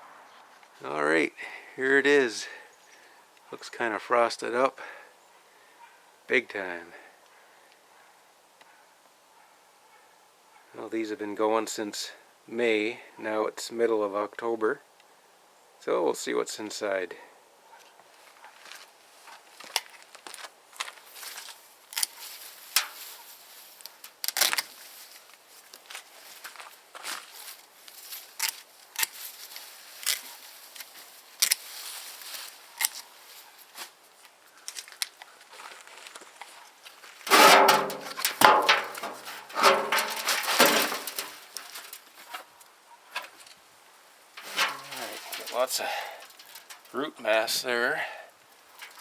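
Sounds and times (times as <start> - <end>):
plant rustling and crackling: 19.6 - 47.2, 48.5 - 49.0.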